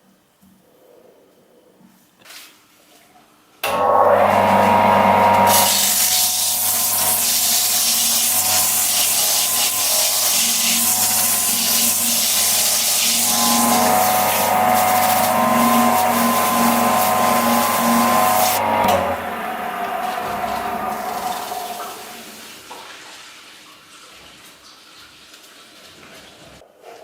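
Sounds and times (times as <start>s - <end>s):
power tool motor hum: 3.7s - 22.5s
rasping on wood: 5.6s - 18.6s.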